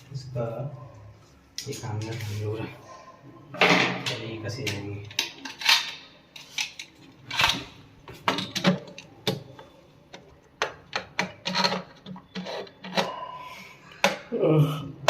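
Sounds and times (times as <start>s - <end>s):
scraping and rubbing of fittings: 11.0s - 13.3s.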